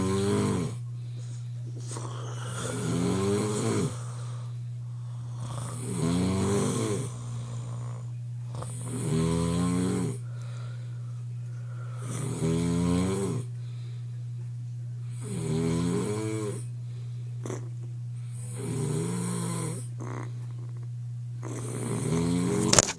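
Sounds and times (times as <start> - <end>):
person snoring: 0.0 - 0.8, 1.8 - 10.9, 11.6 - 13.5, 15.1 - 16.7, 17.4 - 20.8, 21.4 - 22.8
steady low hum: 0.0 - 22.9.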